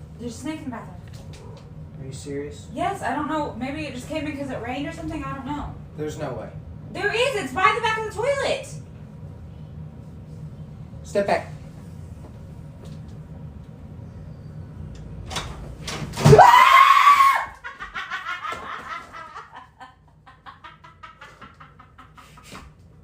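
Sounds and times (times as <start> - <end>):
person screaming: 16.3 - 17.6
laughter: 17.6 - 22.7.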